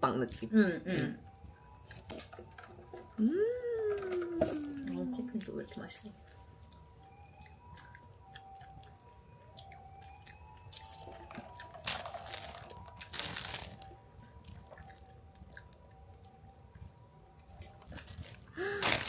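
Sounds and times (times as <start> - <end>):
plastic wrapper crinkling: 10.7 - 15.4, 17.7 - 19.0.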